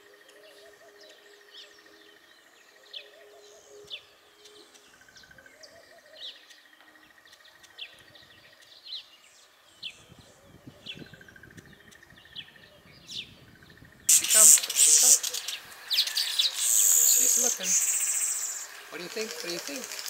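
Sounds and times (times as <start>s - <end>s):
birds chirping: 0.0s - 20.0s
faint warbling birdsong: 0.0s - 20.0s
pulsing insect trill: 13.7s - 20.0s.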